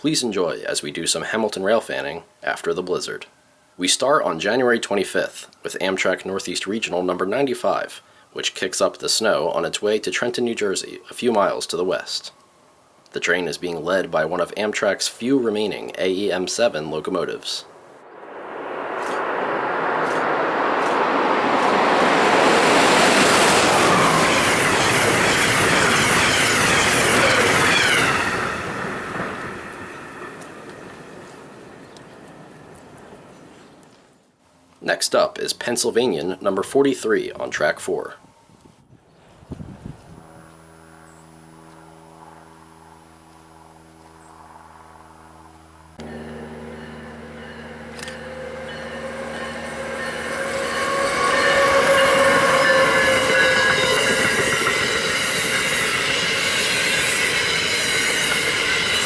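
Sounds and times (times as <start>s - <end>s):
train rushing past: 13.8s - 33.8s, 45.8s - 59.0s
falling whine: 15.4s - 32.9s, 40.0s - 59.0s
wheels clicking over rail joints: 46.0s - 59.0s.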